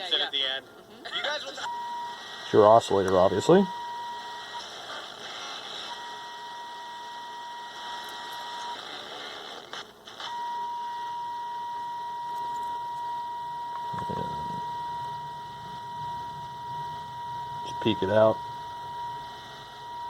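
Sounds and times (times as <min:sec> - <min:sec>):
radio hiss: 0:00.0 - 0:06.1, 0:07.7 - 0:10.4, 0:13.6 - 0:20.0
radio test tone: 0:10.3 - 0:20.0.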